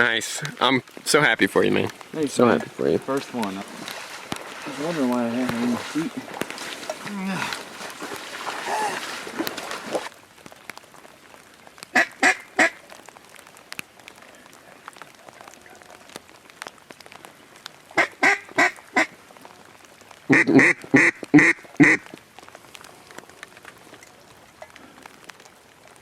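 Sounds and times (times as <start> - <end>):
duck quacking: 20.3 - 22.0.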